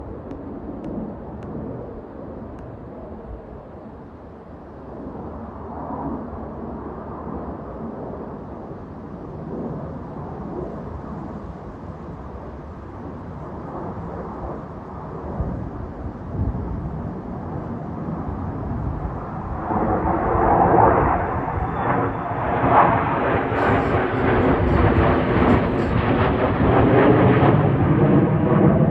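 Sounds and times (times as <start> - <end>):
fighter jet roar: 18.9 - 28.9
jet crackling: 20.1 - 27.4.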